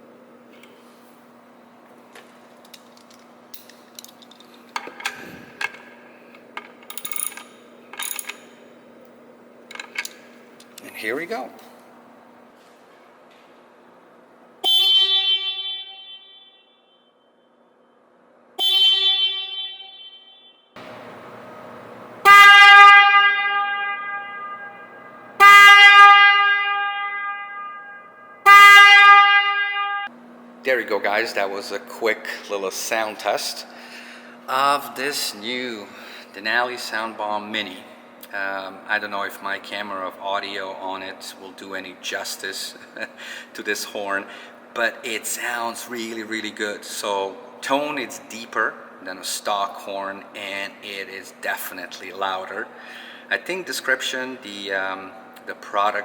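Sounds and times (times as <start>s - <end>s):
loud low-tone motorcycle horn: 14.6s - 17.1s, 18.6s - 20.8s, 22.2s - 30.1s.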